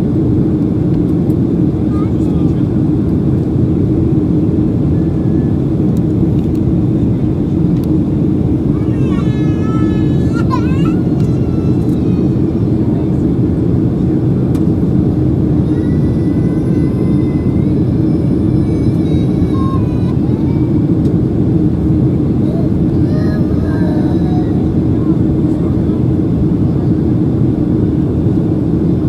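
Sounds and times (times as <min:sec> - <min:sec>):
airflow rush in cabin: 0:00.0 - 0:29.0
jet engines low hum: 0:00.0 - 0:29.0
faint voices: 0:04.8 - 0:21.0, 0:21.9 - 0:27.5.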